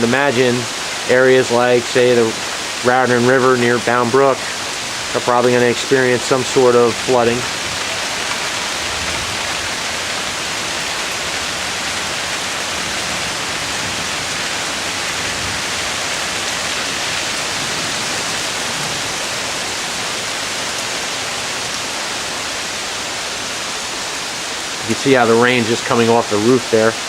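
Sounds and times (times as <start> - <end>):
heavy rain pouring: 0.0 - 27.0.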